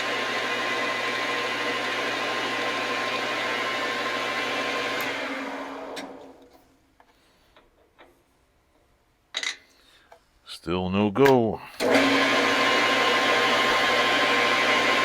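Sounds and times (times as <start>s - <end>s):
metal lathe running: 11.8s - 15.0s.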